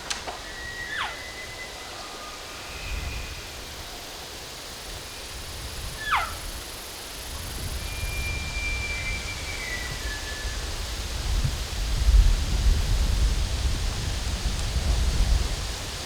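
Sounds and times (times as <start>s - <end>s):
wind rumble on microphone: 0.0s - 16.0s
elk calling: 0.1s - 3.1s, 6.0s - 6.5s.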